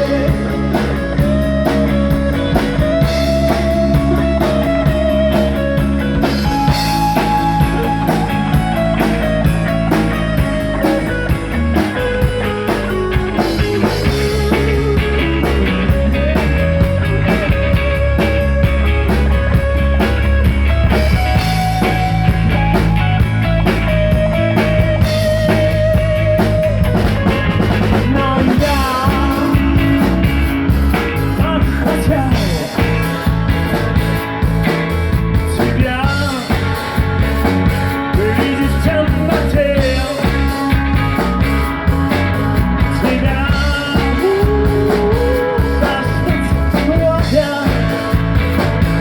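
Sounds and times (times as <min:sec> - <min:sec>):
lead guitar bent notes: 0:00.0 - 0:49.0
rock band playing: 0:00.0 - 0:49.0.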